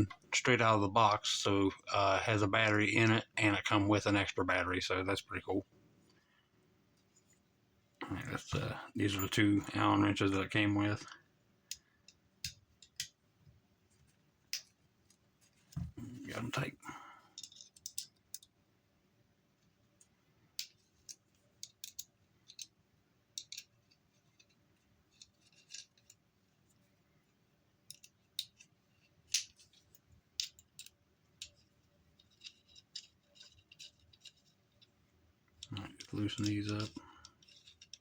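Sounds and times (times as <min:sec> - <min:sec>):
small metal clicks and taps: 0:11.6 - 0:13.2, 0:17.4 - 0:18.5, 0:20.0 - 0:26.2, 0:27.9 - 0:28.7, 0:29.3 - 0:34.9, 0:35.5 - 0:38.0.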